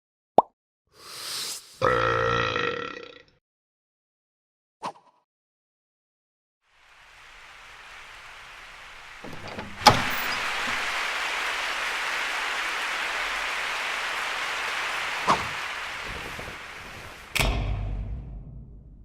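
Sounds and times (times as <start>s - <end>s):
steady hiss: 6.7s - 17.4s.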